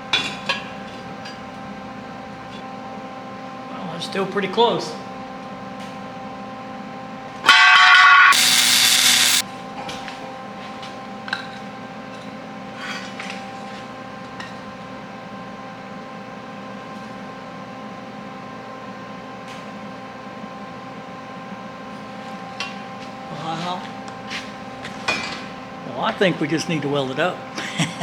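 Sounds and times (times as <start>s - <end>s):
welder buzzing and crackling: 7.5s - 9.4s
steady hum: 8.3s - 9.4s.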